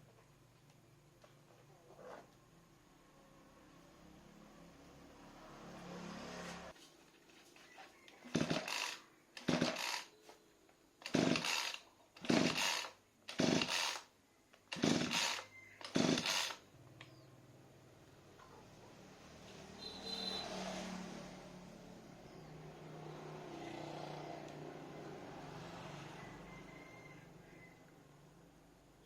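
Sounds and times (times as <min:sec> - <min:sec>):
lawn mower pull-start cranking: 0:08.3 - 0:10.1, 0:11.0 - 0:14.1, 0:14.7 - 0:16.6.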